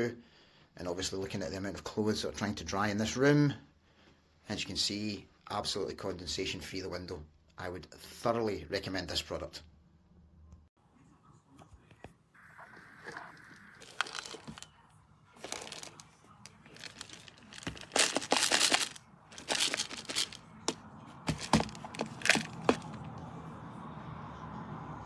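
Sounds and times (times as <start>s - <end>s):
crinkling handling noises: 12.7s - 14.7s, 15.4s - 23.2s
loud rustling: 13.8s - 14.6s, 15.4s - 16.0s, 16.6s - 23.1s.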